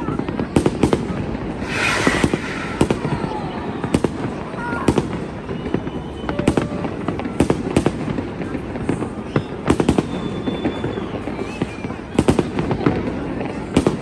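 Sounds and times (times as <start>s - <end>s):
low rumble: 1.6s - 3.9s.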